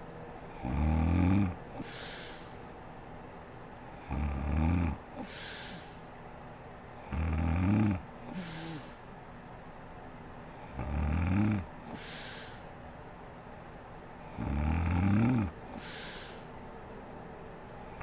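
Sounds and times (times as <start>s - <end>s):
woman snoring: 0.5s - 2.5s, 4.0s - 6.0s, 7.0s - 9.0s, 10.7s - 12.6s, 14.3s - 16.5s
breathy exhale: 1.7s - 2.7s, 5.2s - 6.1s, 8.3s - 9.1s, 11.8s - 12.7s, 15.3s - 16.6s.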